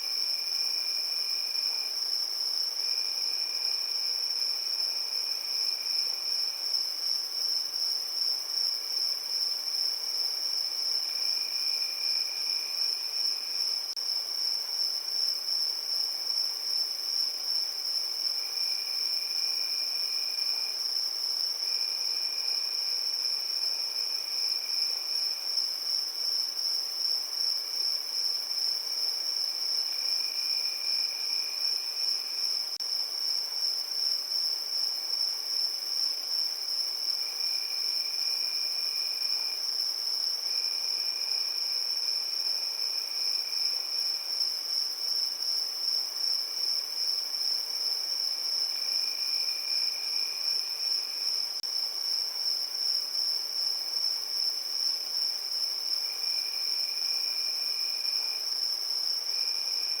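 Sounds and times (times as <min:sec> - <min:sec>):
lower cricket trill: 0:00.0 - 1:00.0
crickets high-pitched trill: 0:17.6 - 1:00.0.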